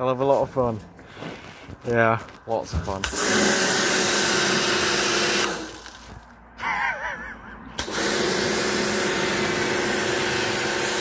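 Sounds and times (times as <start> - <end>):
pressure washer click: 3.0 - 5.8
motor hum: 3.0 - 6.2, 7.8 - 11.0
spray hissing: 7.8 - 11.0.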